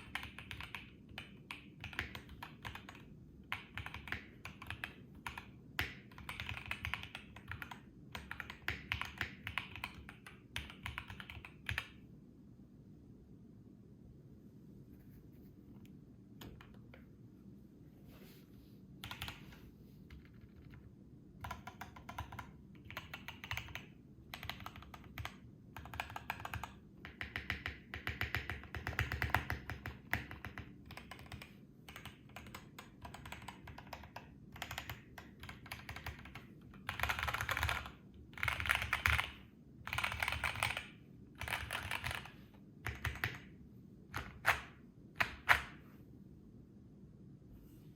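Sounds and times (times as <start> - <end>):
typing on mechanical keyboard: 0.0 - 12.0, 19.0 - 19.5, 20.1 - 45.8.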